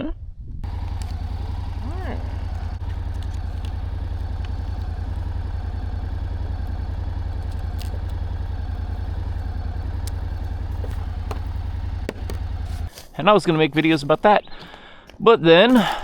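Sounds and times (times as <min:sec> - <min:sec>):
motorcycle engine idling: 0:00.6 - 0:12.9.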